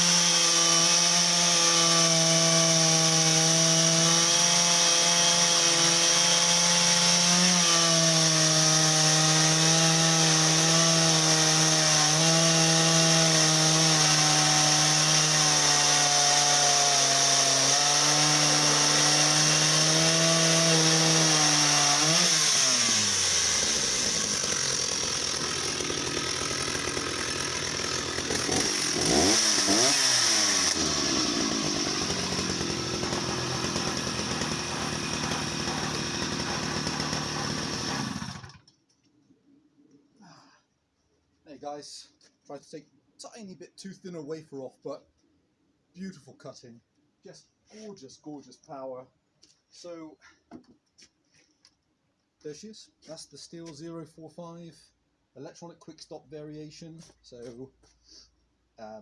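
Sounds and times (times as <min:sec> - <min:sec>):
chainsaw cutting log: 0:00.0 - 0:38.7.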